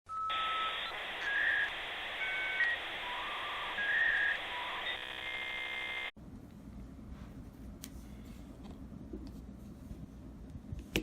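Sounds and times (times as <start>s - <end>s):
dial-up modem handshake: 0.3s - 6.1s.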